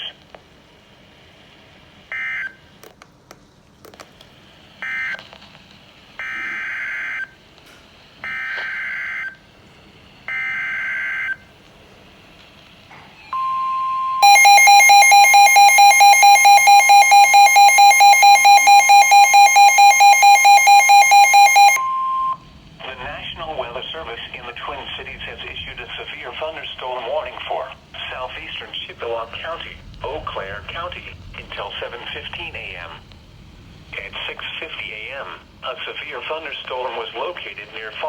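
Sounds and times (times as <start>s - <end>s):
pulsing attention alarm: 13.3s - 23.1s
short data bursts: 13.3s - 23.2s
steady tone: 13.3s - 26.6s.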